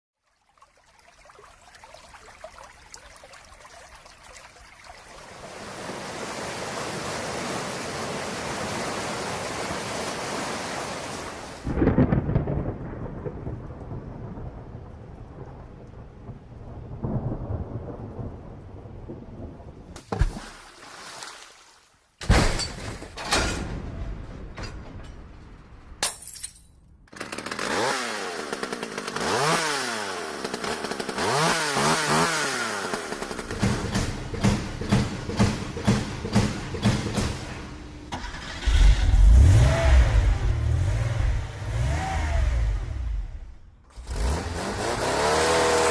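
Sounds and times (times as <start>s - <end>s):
steady rain: 0.8s - 20.0s
thunderclap and rolling rumble: 11.6s - 20.0s, 23.4s - 26.0s.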